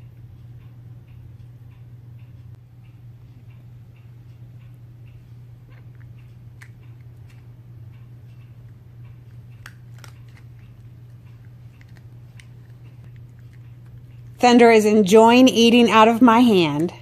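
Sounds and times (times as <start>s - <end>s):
steady low hum: 0.0s - 17.0s
cat crunching dry treats: 9.3s - 14.1s.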